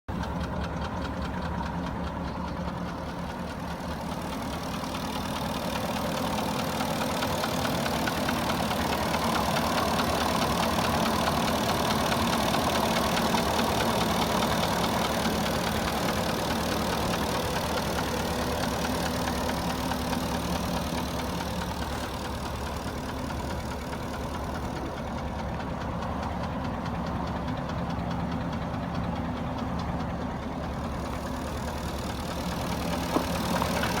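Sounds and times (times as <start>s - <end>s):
engine idling with knocking: 0.1s - 34.0s.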